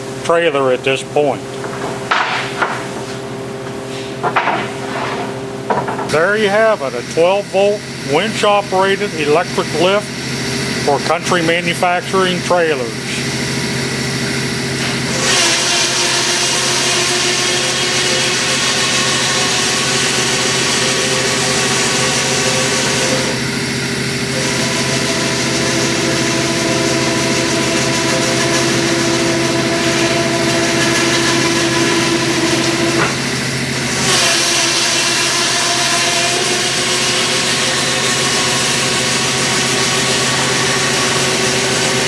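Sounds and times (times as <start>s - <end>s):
steady low hum: 0.0s - 15.2s
electric winch motor running: 6.1s - 42.0s.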